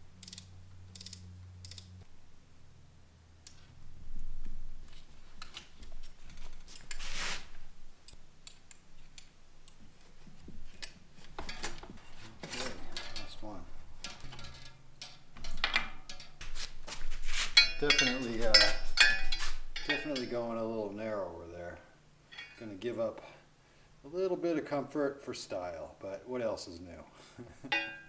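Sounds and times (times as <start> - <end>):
bicycle parts and tools clicking: 0.1 - 2.0, 4.9 - 7.1, 8.0 - 11.8, 14.0 - 16.6.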